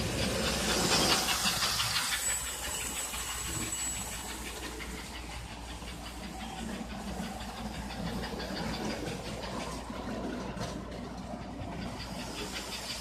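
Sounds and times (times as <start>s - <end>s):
model train clicking and hiss: 0.0s - 13.0s.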